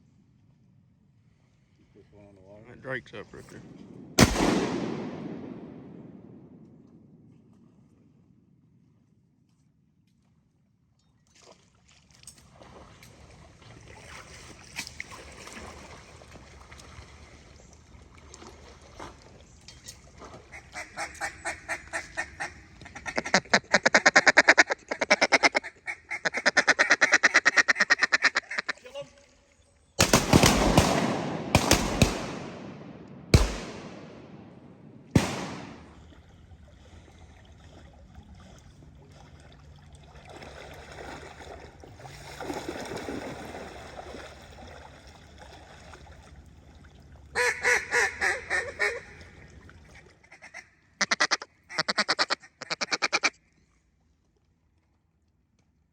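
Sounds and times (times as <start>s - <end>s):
shotgun shots echoing: 3.2s - 7.1s, 30.0s - 36.2s
duck call quacks: 20.5s - 28.8s, 47.4s - 49.4s, 50.3s - 53.3s.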